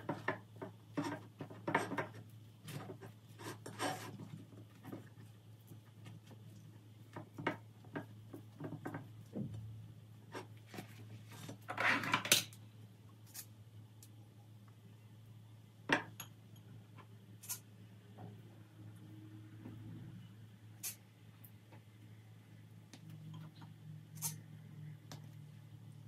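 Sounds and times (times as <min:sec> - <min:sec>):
rustling scrape: 0:02.6 - 0:04.9.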